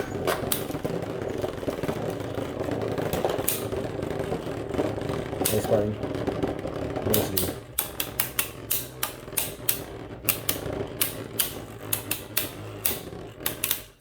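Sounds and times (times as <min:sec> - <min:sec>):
spinning tops clacking: 0:00.0 - 0:14.0
spinning tops whirring: 0:00.0 - 0:14.0.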